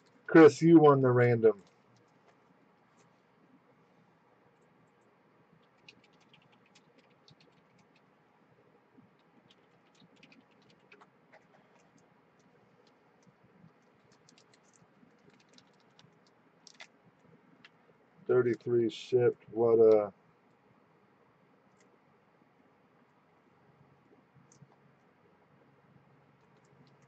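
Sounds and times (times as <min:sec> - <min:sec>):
computer keys typing: 0:04.8 - 0:08.1, 0:09.1 - 0:16.9.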